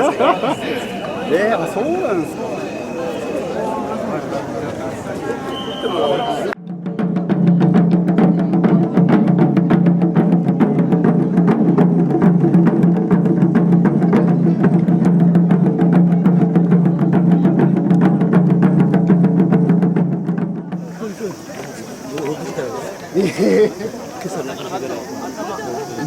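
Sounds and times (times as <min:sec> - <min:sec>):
rapid drum strikes: 0:06.6 - 0:22.1.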